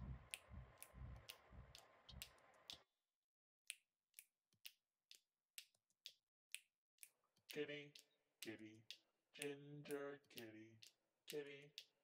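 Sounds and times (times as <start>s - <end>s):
soft low thumps: 0.0s - 2.3s
sharp steady ticks: 0.0s - 2.8s, 3.7s - 12.0s.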